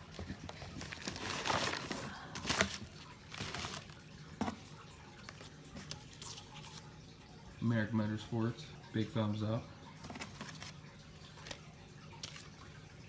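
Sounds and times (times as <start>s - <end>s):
packaging rustling: 0.0s - 6.9s, 10.0s - 12.6s.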